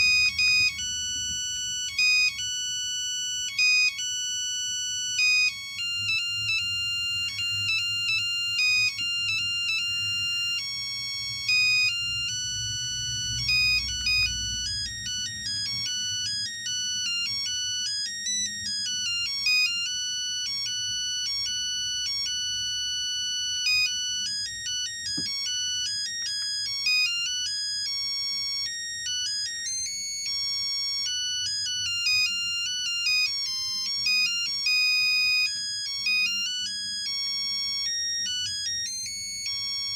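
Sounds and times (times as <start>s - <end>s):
phone ringtone melody: 0.0s - 39.9s.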